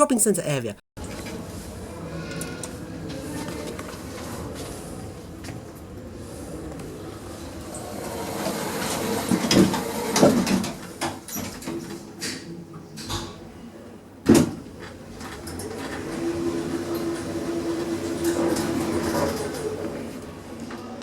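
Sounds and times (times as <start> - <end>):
lift motor humming: 15.3 - 20.5.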